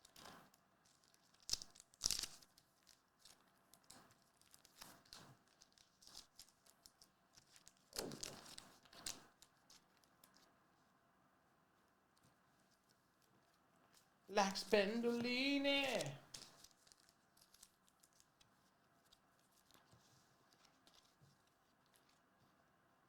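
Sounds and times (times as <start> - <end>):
wrapper tearing and crinkling: 1.0 - 9.2, 15.9 - 18.4.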